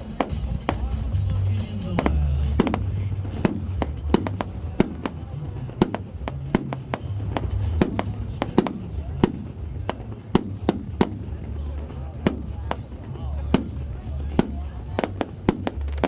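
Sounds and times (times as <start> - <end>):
fireworks bangs echoing: 0.0 - 16.0.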